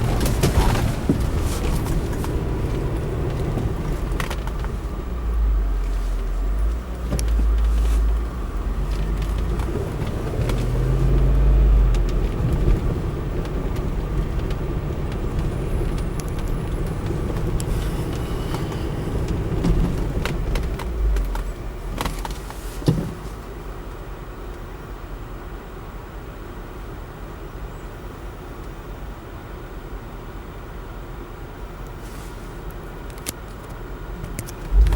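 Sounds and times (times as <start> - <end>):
knocks and clatter: 0.0 - 5.0, 8.8 - 23.2
car engine driving off-road: 0.0 - 34.9.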